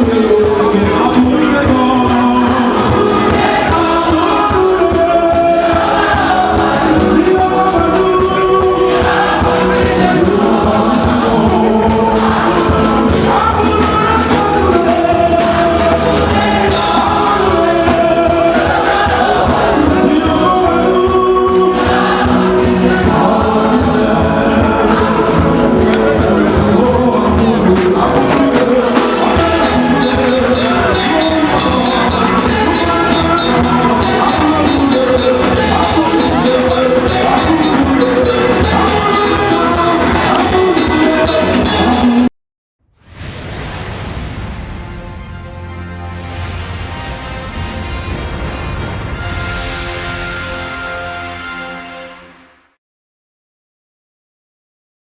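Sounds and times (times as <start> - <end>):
band with steady drum beat: 0.0 - 42.3
gospel choir singing: 0.0 - 42.3.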